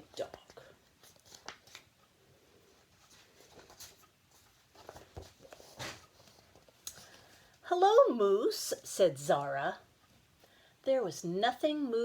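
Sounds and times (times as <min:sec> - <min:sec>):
paper pages rustling: 0:00.3 - 0:02.0, 0:02.7 - 0:07.5.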